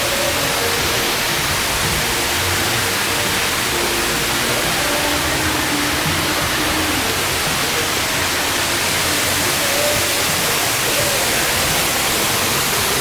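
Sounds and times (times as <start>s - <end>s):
distant voices: 0.0s - 13.0s
water rushing in fish tank: 0.0s - 13.0s.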